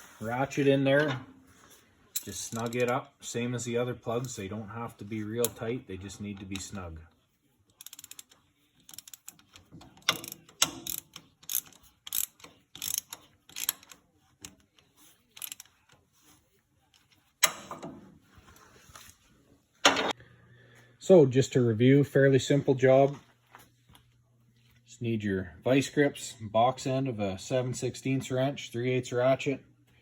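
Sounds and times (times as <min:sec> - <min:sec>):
ratchet clicking: 0:02.2 - 0:03.0, 0:07.8 - 0:14.7, 0:15.4 - 0:15.8.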